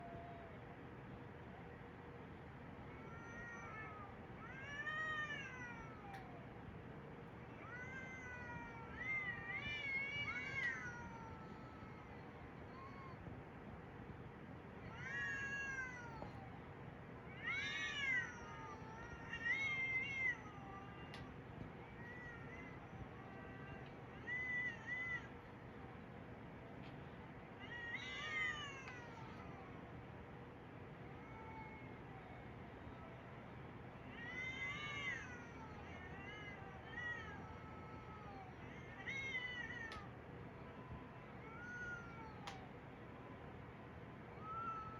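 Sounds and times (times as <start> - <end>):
cat meowing: 14.9 - 16.4, 17.3 - 25.3, 27.6 - 29.7, 34.1 - 40.1, 41.4 - 42.6.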